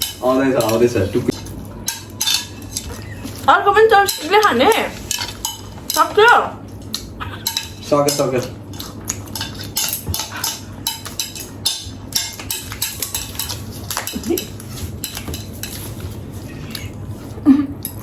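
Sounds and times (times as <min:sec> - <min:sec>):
cutlery clinking on plates: 0:00.0 - 0:16.1.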